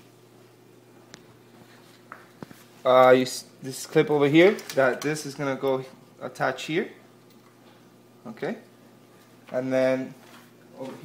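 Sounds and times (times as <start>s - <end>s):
faint steady hum and hiss: 0.0s - 11.0s.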